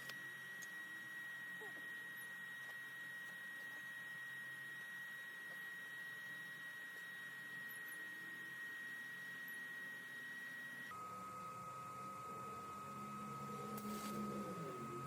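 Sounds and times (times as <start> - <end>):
high-pitched electronic whine: 0.0 - 15.0.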